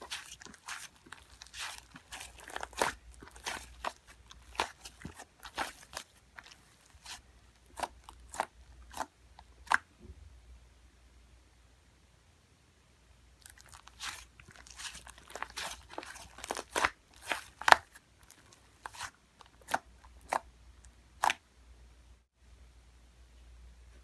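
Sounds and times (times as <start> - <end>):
slime squished crackling and popping: 0.0 - 9.8, 13.4 - 20.5.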